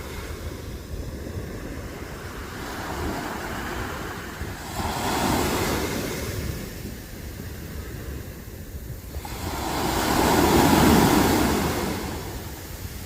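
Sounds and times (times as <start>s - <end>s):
sea waves breaking on beach: 0.0s - 13.0s
wind rumbling on microphone: 0.0s - 13.0s.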